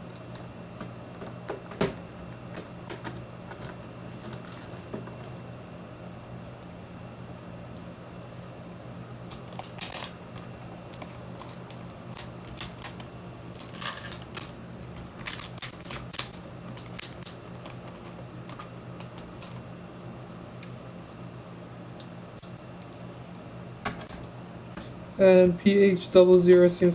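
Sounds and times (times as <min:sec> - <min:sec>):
steady low hum: 0:00.0 - 0:26.9.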